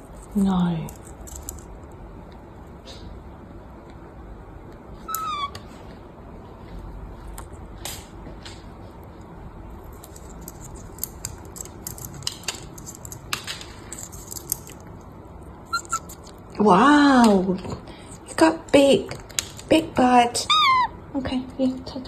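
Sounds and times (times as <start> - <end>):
parrot whining call: 5.0 - 5.7, 15.7 - 16.2, 20.4 - 21.0
parrot beak clicks and nibbling: 9.9 - 14.8.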